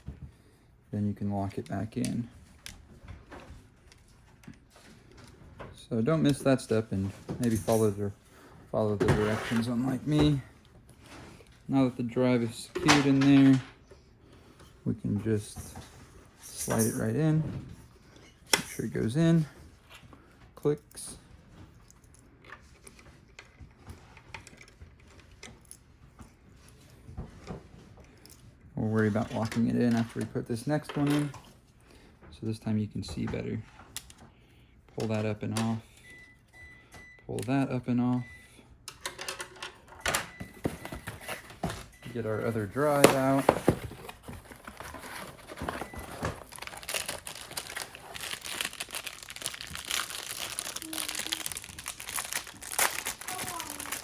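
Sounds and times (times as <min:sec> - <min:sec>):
plastic packaging crinkling: 0:42.8 - 0:54.0.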